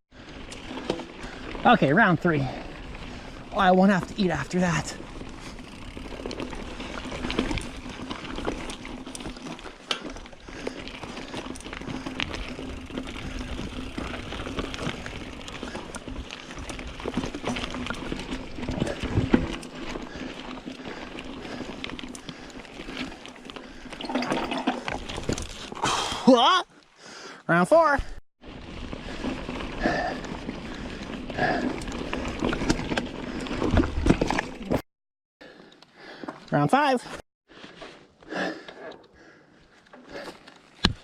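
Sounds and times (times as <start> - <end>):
tyres crunching over dirt and rock: 2.8 - 25.8, 28.5 - 34.8
bike knocks and clicks: 40.8 - 41.0.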